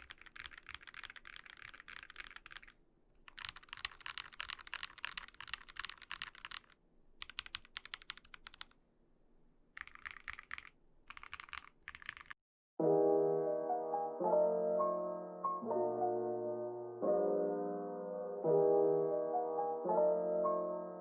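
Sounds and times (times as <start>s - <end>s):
mechanical keyboard typing: 0.0s - 8.8s, 9.8s - 12.4s.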